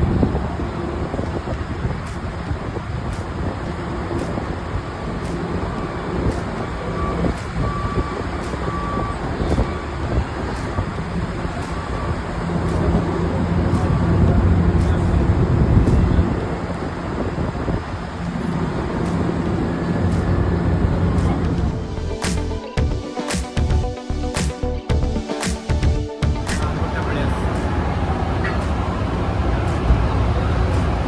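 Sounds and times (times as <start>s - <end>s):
reversing alarm beeping: 5.6s - 14.2s.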